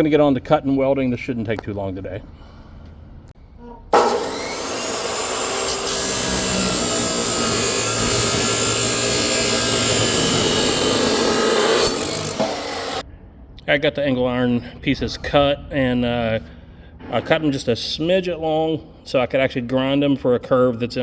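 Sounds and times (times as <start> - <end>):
power tool cutting steel: 4.0 - 13.0.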